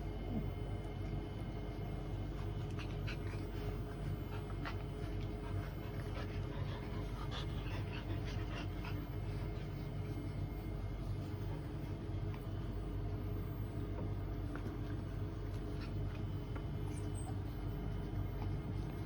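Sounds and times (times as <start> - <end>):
steady low hum: 0.0 - 19.0
dog panting: 1.5 - 11.9.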